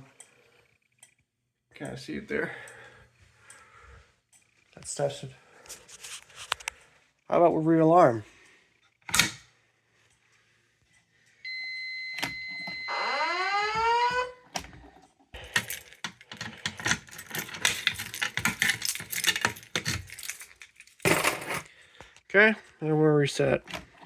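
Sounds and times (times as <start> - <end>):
fire alarm electronic tone: 11.4 - 14.3
fire alarm whoop sweep: 11.5 - 13.7
rapid clattering and rattling: 15.4 - 21.7.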